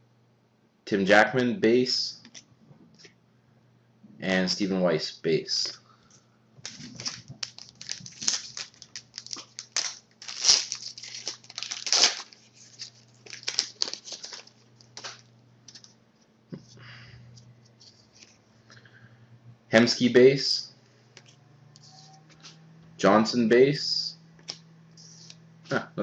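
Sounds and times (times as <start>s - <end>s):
faint electrical hum: 0.0s - 26.0s
foil wrapper crinkling and tearing: 6.6s - 15.9s.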